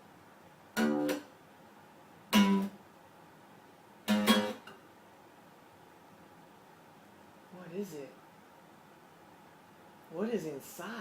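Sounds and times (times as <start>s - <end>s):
guitar chords strummed: 0.8s - 1.3s, 2.3s - 2.8s, 4.1s - 4.8s.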